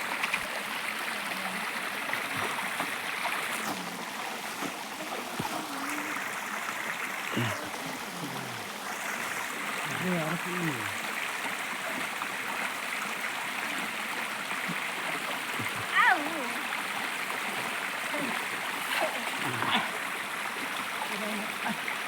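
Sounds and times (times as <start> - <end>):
stream water running: 0.0 - 22.0
faint voices: 4.9 - 11.0.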